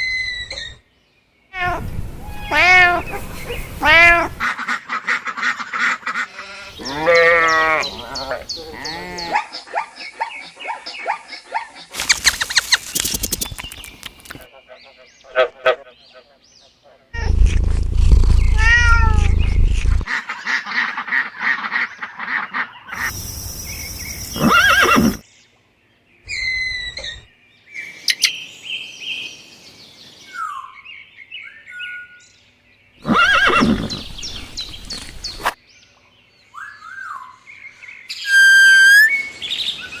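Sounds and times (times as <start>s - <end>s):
animal calls: 1.6s - 4.7s, 24.3s - 25.2s.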